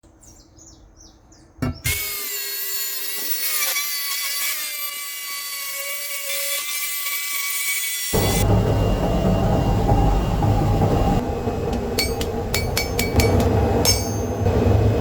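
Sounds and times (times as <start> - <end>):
power grinder grinding steel: 1.7 - 9.6.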